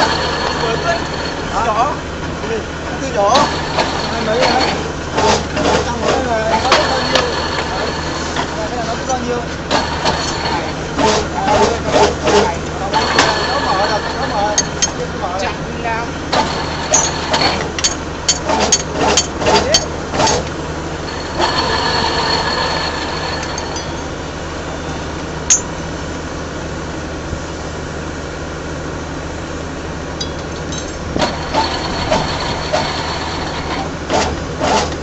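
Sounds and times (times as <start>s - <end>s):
bending machine humming: 0.0s - 35.0s
steel bar clinking: 16.9s - 20.4s, 25.5s - 25.8s, 30.2s - 31.1s.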